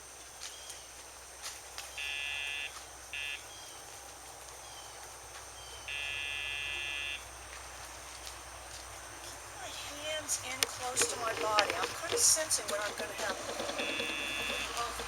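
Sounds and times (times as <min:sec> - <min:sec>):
pager buzzing: 0:10.6 - 0:15.0.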